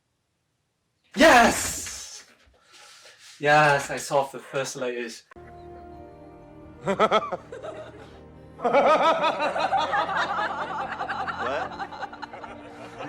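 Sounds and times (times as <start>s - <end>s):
background music: 5.4s - 13.0s.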